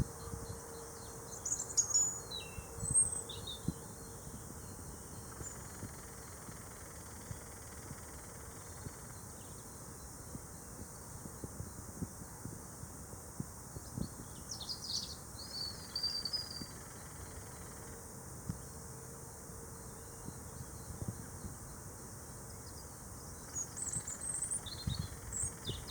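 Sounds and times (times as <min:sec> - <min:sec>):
steady high-pitched hiss: 0:00.0 - 0:25.9.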